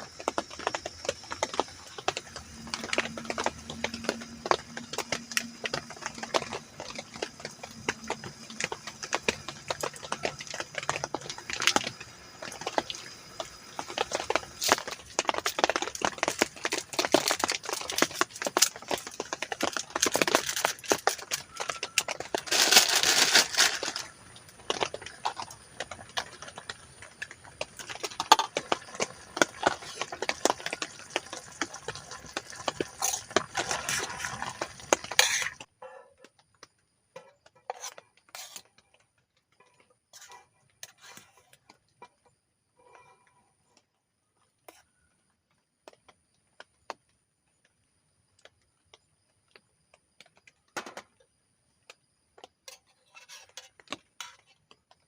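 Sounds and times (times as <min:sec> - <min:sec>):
metal utensils scraping in pan: 0:32.3 - 0:35.7, 0:52.7 - 0:54.5.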